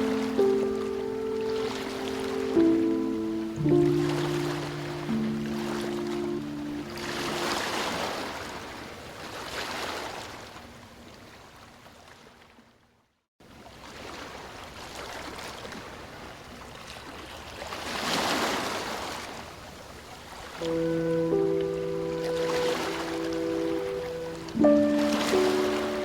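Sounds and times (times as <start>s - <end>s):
ocean waves washing in: 0.0s - 10.4s, 17.6s - 26.0s.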